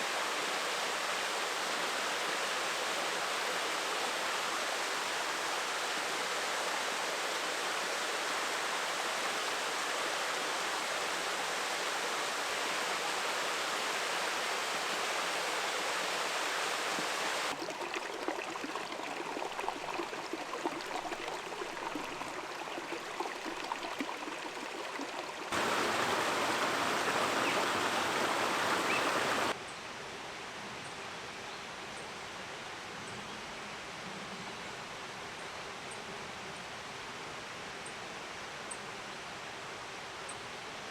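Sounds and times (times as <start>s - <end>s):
flowing water rushing: 0.0s - 29.6s.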